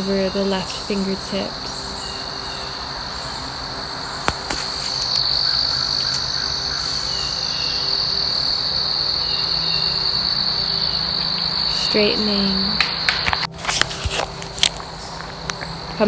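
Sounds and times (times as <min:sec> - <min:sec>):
crickets trilling: 0:00.0 - 0:16.0.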